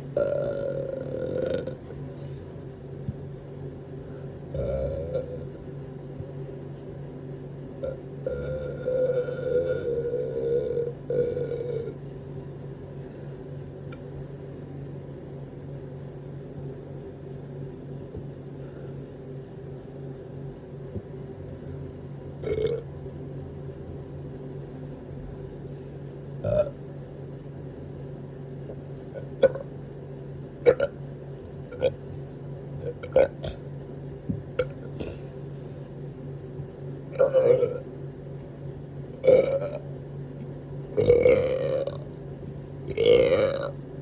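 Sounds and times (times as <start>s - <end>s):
steady low hum: 0.0s - 44.0s
person burping: 0.2s - 1.9s, 4.5s - 5.5s, 7.8s - 12.0s, 22.4s - 22.8s, 37.2s - 37.8s, 41.0s - 42.0s, 42.9s - 43.7s.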